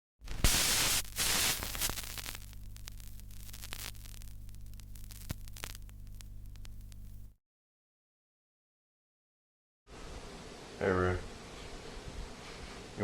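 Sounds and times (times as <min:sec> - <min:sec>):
loud static hiss: 0:00.2 - 0:07.4
low electrical hum: 0:00.2 - 0:07.4.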